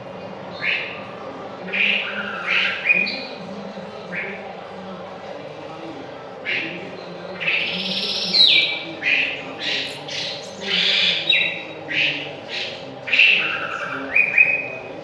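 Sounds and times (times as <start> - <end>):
songbird whistling: 1.7 - 3.3, 7.4 - 14.8.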